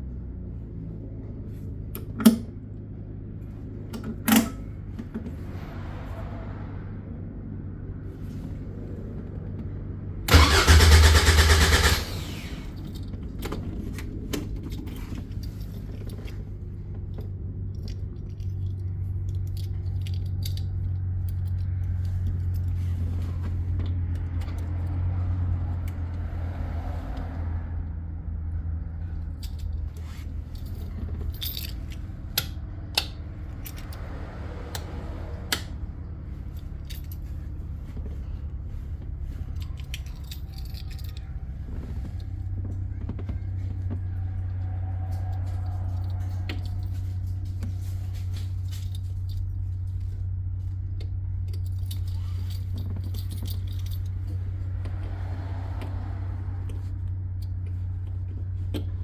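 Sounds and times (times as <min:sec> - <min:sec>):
car engine humming: 0:00.0 - 0:59.0
loud engine burst: 0:10.3 - 0:12.7.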